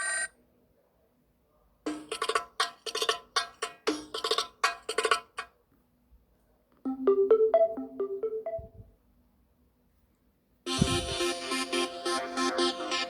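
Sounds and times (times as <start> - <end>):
percussive ringtone tapping: 1.9 - 5.5, 6.9 - 8.9
electronic dance-style ringtone: 6.9 - 8.9, 10.7 - 13.0
marimba-like ringtone: 6.9 - 8.9, 10.7 - 13.0.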